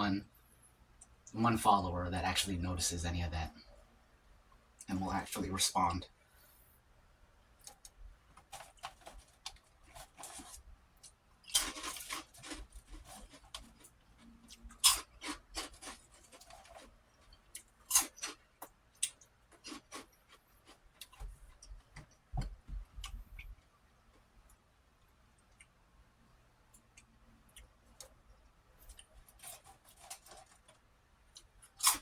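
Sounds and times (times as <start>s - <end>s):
crackers being chewed: 7.6s - 24.6s, 26.8s - 32.0s.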